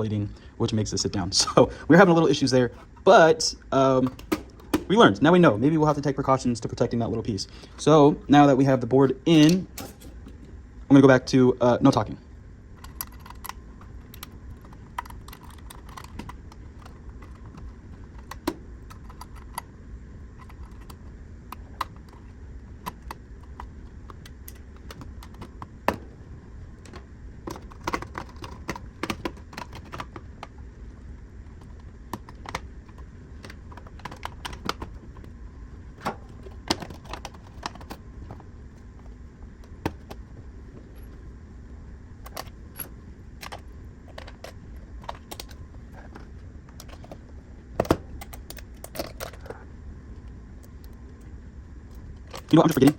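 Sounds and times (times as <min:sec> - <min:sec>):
steady low hum: 0:00.0 - 0:52.9
clicks and taps of small parts: 0:04.0 - 0:04.9, 0:12.8 - 0:19.7, 0:20.4 - 0:22.2, 0:22.8 - 0:26.0, 0:26.8 - 0:30.5, 0:31.6 - 0:35.3, 0:42.3 - 0:47.2.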